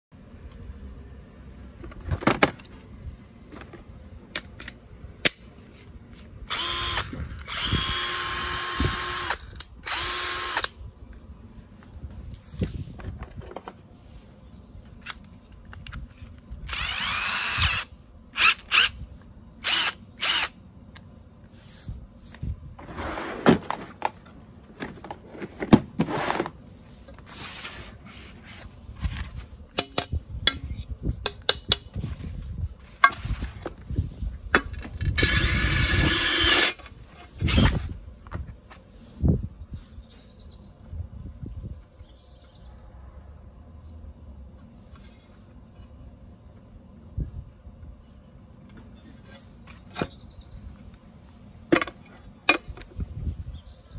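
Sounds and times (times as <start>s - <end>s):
clicks and handling noise: 1.8s - 6.4s, 14.8s - 16.6s
cordless drill whirring: 6.5s - 10.8s, 16.7s - 19.0s, 19.6s - 20.6s, 37.4s - 37.8s.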